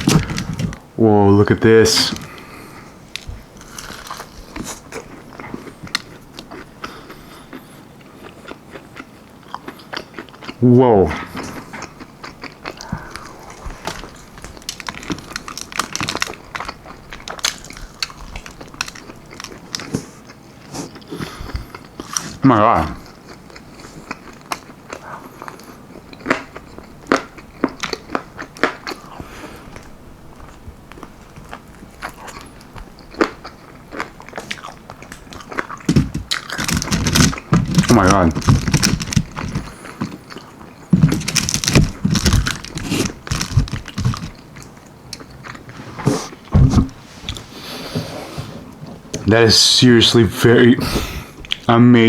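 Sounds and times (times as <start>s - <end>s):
crunchy chewing: 1.7s - 46.5s.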